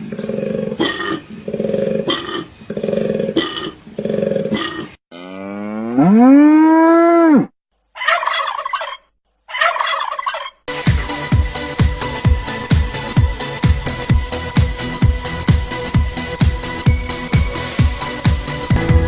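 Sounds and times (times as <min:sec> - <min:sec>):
animal calls: 0:07.3 - 0:10.6
electronic dance music: 0:10.7 - 0:19.0.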